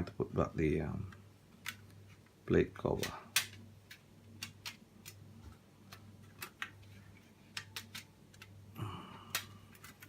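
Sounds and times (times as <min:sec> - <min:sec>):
steady low hum: 0:08.2 - 0:10.0.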